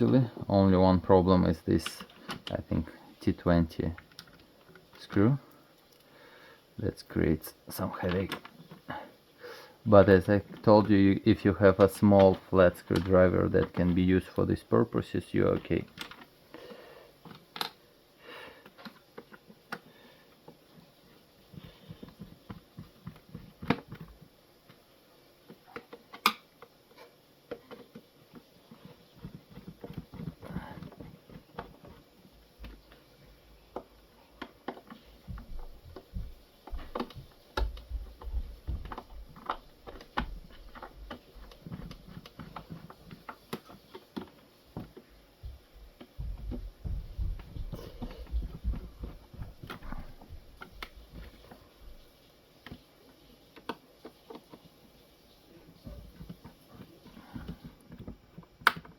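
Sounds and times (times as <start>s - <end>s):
plastic parts and screws clicking: 10.2s - 14.6s, 15.4s - 16.3s, 17.2s - 17.8s, 36.0s - 45.0s
heavy low thumps: 46.2s - 49.6s.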